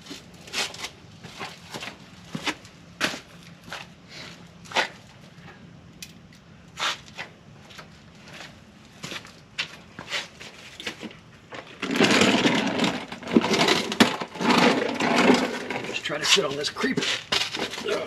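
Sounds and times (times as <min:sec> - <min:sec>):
creeper rolling on casters: 0:10.9 - 0:18.0.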